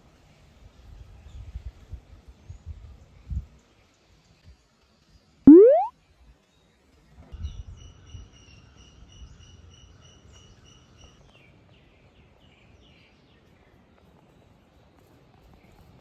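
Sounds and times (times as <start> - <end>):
high chirps: 5.5 - 5.9
short falling chirps: 5.5 - 5.9.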